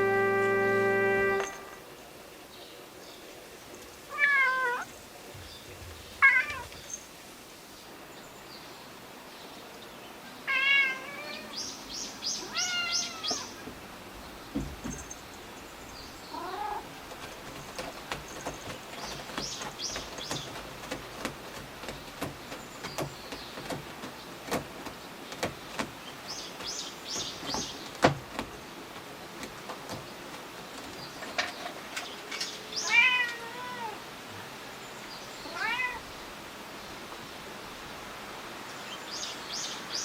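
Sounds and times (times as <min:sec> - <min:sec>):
cat meowing: 0:04.1 - 0:04.9, 0:06.2 - 0:06.7, 0:10.5 - 0:11.6, 0:12.4 - 0:13.6, 0:16.3 - 0:16.8, 0:32.8 - 0:34.0, 0:35.4 - 0:36.1.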